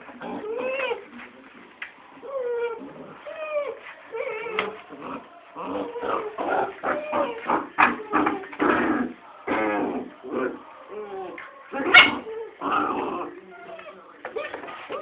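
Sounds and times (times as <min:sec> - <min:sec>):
puppies yipping and growling: 0:00.0 - 0:01.2, 0:02.2 - 0:09.7, 0:10.5 - 0:15.0
puppies whining: 0:00.3 - 0:01.2, 0:02.2 - 0:08.6, 0:10.9 - 0:15.0.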